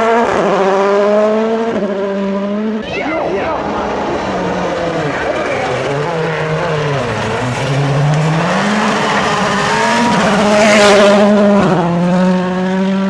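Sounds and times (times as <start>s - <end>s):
rally car engine revving: 0.0s - 13.0s
tyre and road noise: 2.8s - 12.4s.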